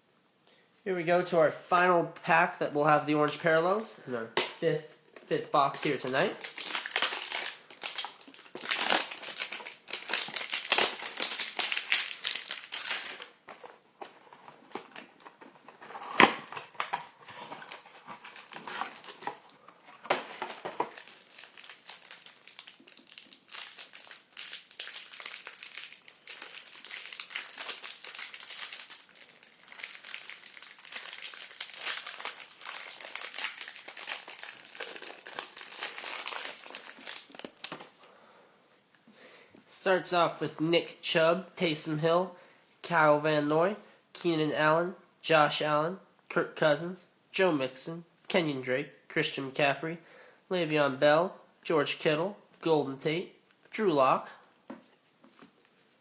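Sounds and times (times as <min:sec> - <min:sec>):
plastic crinkling: 0:05.8 - 0:38.0
cardboard handling: 0:13.5 - 0:21.0.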